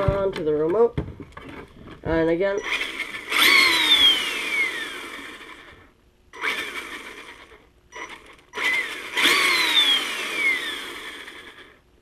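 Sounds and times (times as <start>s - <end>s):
electric motor whine revving: 2.6s - 11.8s.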